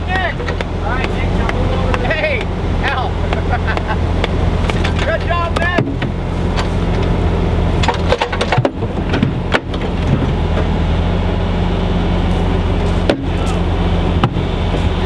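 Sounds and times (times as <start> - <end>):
engine running steadily: 0.0 - 15.0
sharp clicks and knocks: 0.1 - 2.5, 3.3 - 7.1, 7.8 - 10.7.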